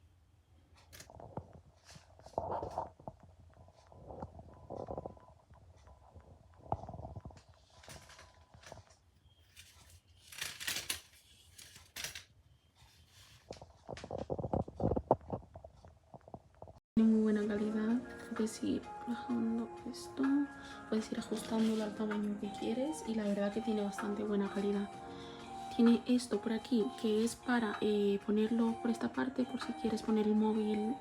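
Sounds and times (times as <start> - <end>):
rubbing and scraping: 1.0 - 5.2.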